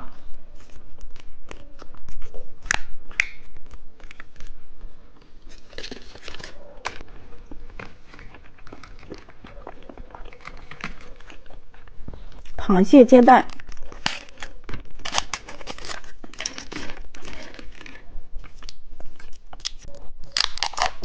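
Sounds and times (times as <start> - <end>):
plastic wrapper crinkling: 5.2 - 21.0
biting and chewing: 5.6 - 12.6, 13.4 - 21.0.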